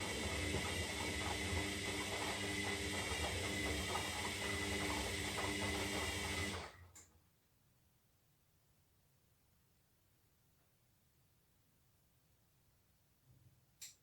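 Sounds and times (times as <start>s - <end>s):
washing machine motor humming: 0.0s - 6.8s
faint click: 13.8s - 14.0s.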